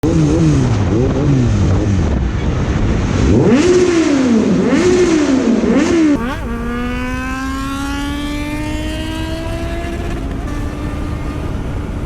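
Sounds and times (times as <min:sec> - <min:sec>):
motorcycle engine revving: 0:03.2 - 0:12.0.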